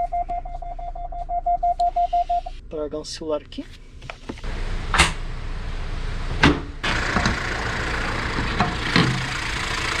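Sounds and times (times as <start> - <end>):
car engine starting and idling: 4.4 - 10.0.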